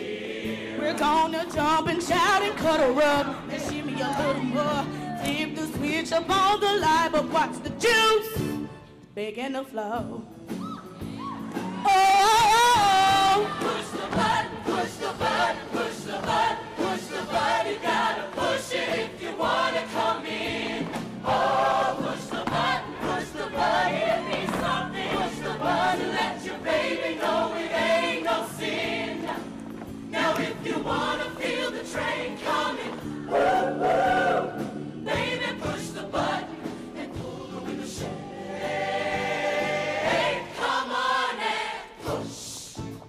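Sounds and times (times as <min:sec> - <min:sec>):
choir singing up-tempo song: 0:00.0 - 0:08.7, 0:11.5 - 0:43.0.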